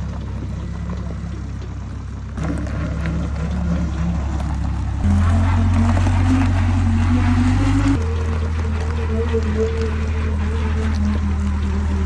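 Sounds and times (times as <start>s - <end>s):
engine running: 0.0s - 12.0s.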